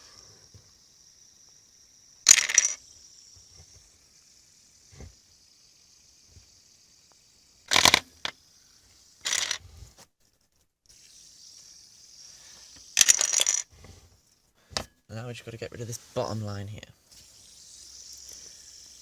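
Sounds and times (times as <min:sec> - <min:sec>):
faint high hiss: 0:00.0 - 0:19.0
plastic bricks clattering: 0:02.3 - 0:02.8, 0:07.7 - 0:08.4, 0:09.2 - 0:09.6, 0:13.0 - 0:13.7.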